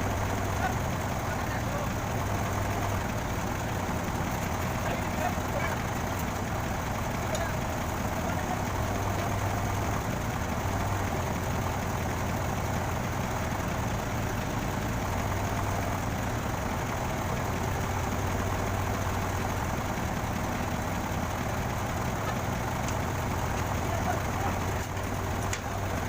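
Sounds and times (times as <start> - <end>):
crane engine idling: 0.0 - 26.0.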